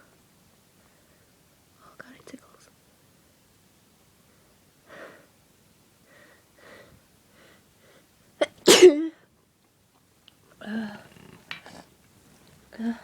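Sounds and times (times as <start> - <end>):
faint breaths: 4.3 - 5.4, 6.0 - 8.2
person sneezing: 8.4 - 9.1.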